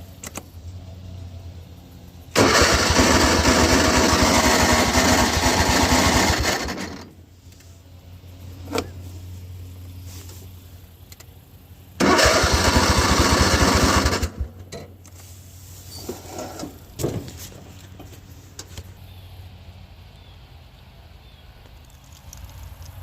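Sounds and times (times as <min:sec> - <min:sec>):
starter motor pulsing: 0:02.4 - 0:07.1, 0:12.0 - 0:14.5
faint clunks: 0:16.0 - 0:18.9.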